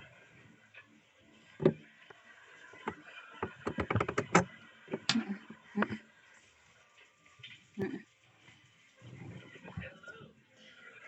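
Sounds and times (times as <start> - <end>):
sharp clicks and knocks: 2.8 - 5.2.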